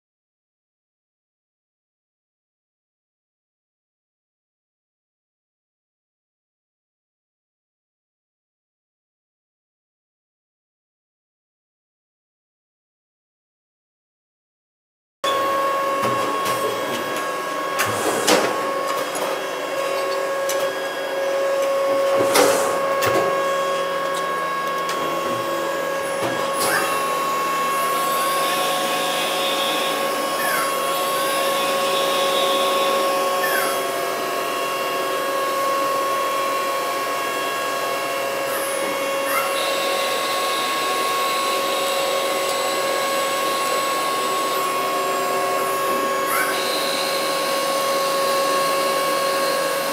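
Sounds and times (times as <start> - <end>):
lathe whining: 15.2 - 49.9.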